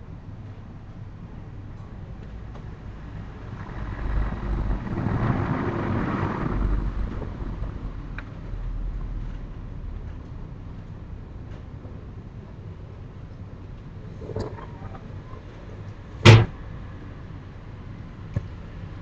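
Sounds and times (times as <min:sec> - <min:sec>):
vehicle passing by: 0:03.2 - 0:08.1.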